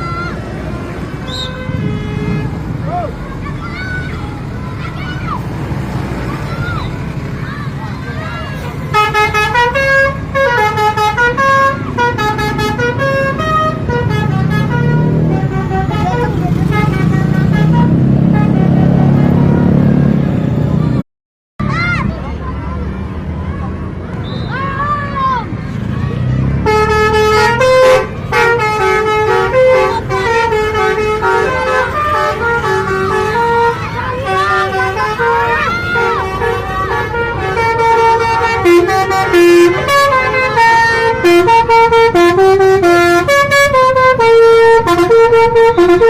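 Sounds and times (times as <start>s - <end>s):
musical bus horn melody: 1.0s - 2.8s, 8.8s - 20.2s, 26.6s - 46.0s.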